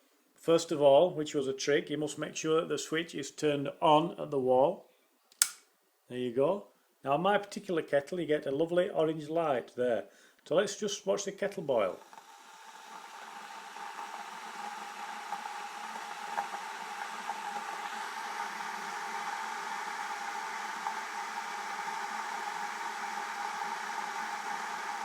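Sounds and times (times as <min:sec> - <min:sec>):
electric kettle hissing: 0:10.1 - 0:25.0.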